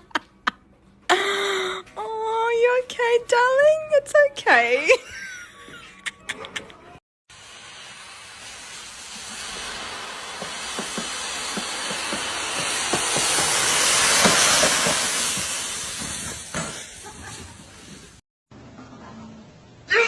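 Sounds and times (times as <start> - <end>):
rushing hiss: 7.3 - 18.2.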